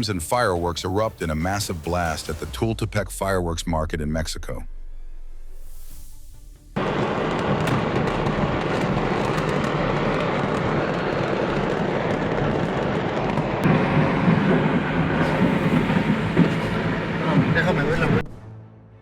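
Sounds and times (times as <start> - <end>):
loud firework bangs: 6.8 - 18.2
fireworks crackling and rumbling: 6.8 - 18.3.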